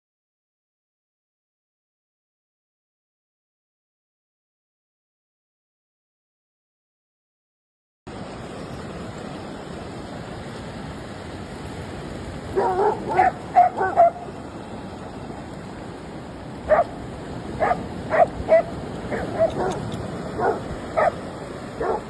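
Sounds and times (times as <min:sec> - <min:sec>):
steady surf: 0:08.1 - 0:22.0
dog barking and yipping: 0:12.6 - 0:14.3, 0:16.7 - 0:16.9, 0:17.6 - 0:21.2, 0:21.8 - 0:22.0.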